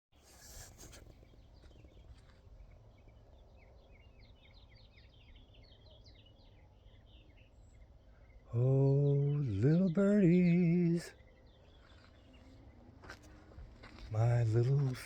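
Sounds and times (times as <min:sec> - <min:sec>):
faint birdsong chirping: 0:00.2 - 0:15.0.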